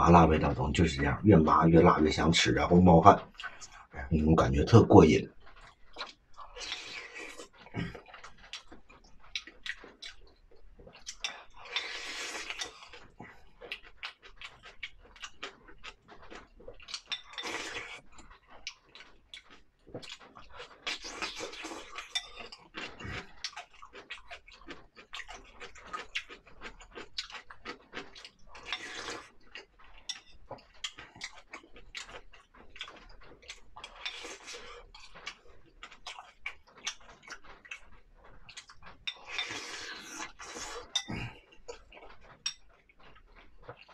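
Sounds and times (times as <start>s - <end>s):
person chewing: 0.3s - 4.2s, 5.1s - 43.9s
person slurping: 6.5s - 8.2s, 11.6s - 13.4s, 17.4s - 18.0s, 28.6s - 29.3s, 39.2s - 41.8s.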